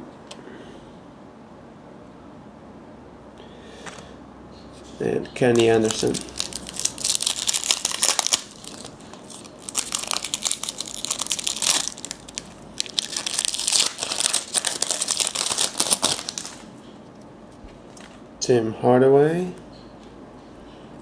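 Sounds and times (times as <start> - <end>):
card pack wrapper crinkling: 5.4 - 16.7.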